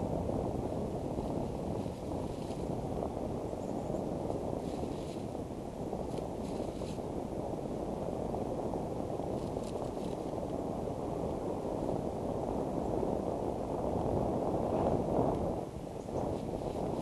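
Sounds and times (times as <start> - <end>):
wind buffeting microphone: 0.0 - 17.0
faint bird chirps: 15.8 - 16.4.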